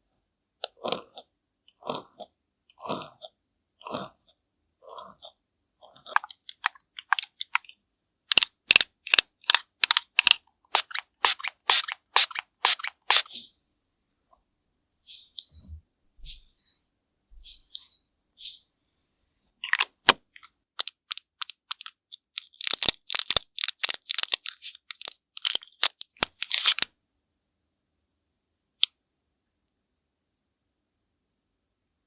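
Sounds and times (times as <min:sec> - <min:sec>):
soft scratchy strokes: 0:15.1 - 0:18.8
sharp crisp crackles and taps: 0:19.7 - 0:26.9.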